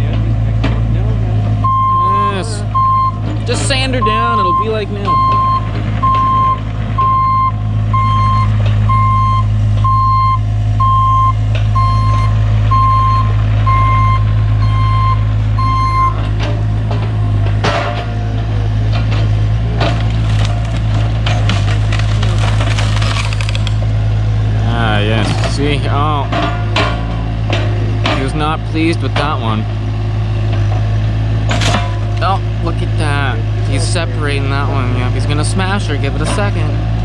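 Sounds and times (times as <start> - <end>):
diesel machinery running: 0.0 - 37.0
backup alarm beeping: 1.6 - 16.2
wood cracking and crushing: 19.1 - 24.1, 25.0 - 27.0.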